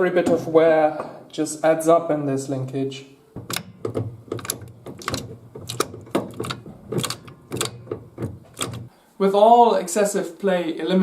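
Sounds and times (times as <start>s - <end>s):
gearshift linkage clicks and clunks: 3.4s - 8.9s.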